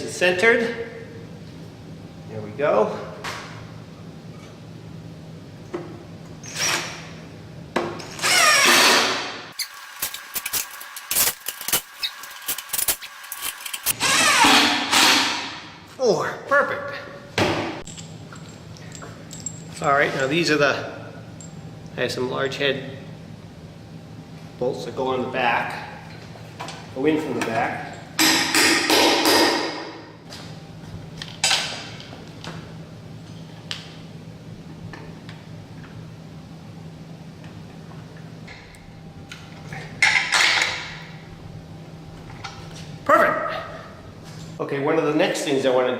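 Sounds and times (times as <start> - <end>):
power drill running: 9.6 - 15.1.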